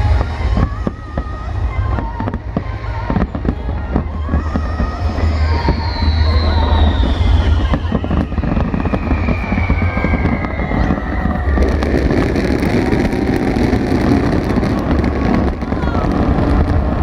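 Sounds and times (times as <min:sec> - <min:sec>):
fireworks crackling: 0:00.0 - 0:17.0
fireworks pops: 0:00.0 - 0:17.0
fireworks rumbling: 0:00.0 - 0:17.0
falling whistle tone: 0:04.2 - 0:15.4.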